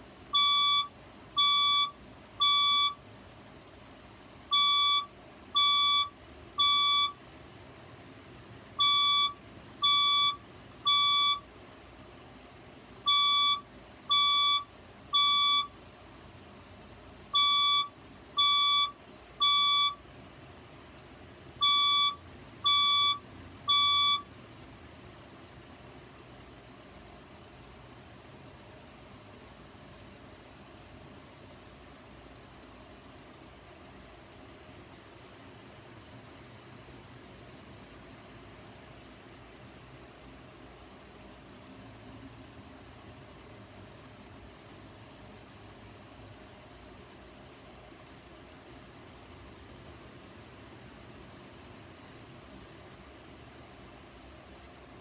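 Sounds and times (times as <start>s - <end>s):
fire alarm beeping: 0.3s - 3.0s, 4.5s - 7.2s, 8.8s - 11.5s, 13.0s - 15.8s, 17.3s - 20.0s, 21.6s - 24.3s.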